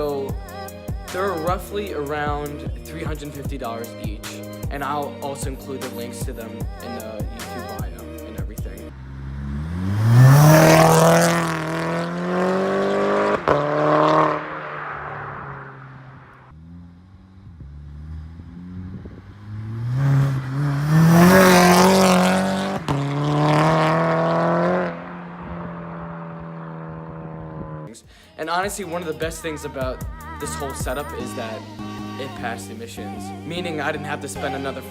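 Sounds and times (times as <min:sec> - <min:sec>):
car engine revving: 0:00.0 - 0:27.9.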